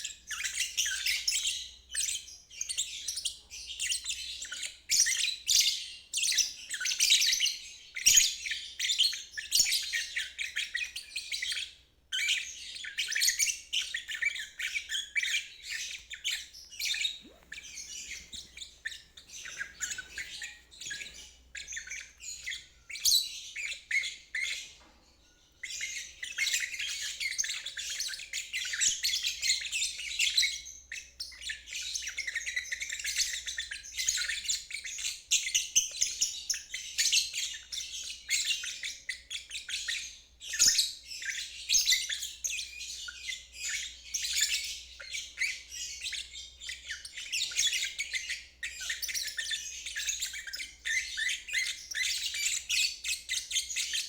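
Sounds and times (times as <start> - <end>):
bird chattering twitter: 13.1 - 24.6.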